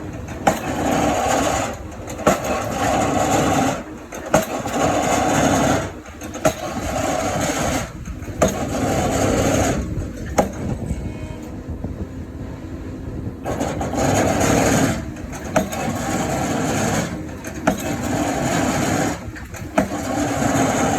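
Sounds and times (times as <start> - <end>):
excavator diesel engine working: 0.0 - 20.9
sharp knocks: 2.1 - 10.8, 13.5 - 20.9.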